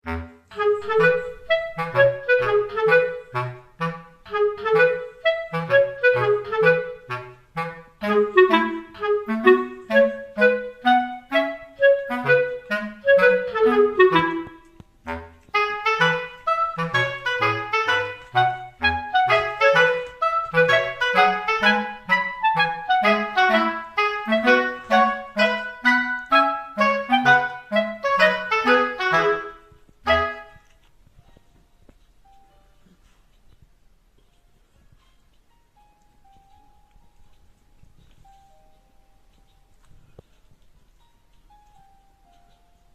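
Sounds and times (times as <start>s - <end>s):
woodwind melody: 0.0s - 30.9s.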